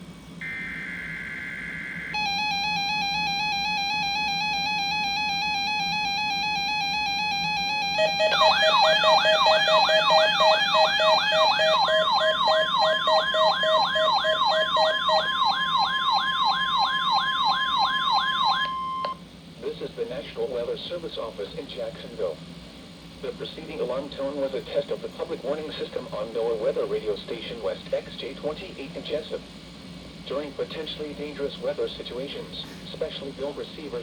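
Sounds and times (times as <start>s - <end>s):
digital data tones: 0.4s - 15.3s
fast beeping: 0.4s - 16.4s
rising siren sweep: 0.4s - 19.2s
steady electronic alarm tone: 0.4s - 19.2s.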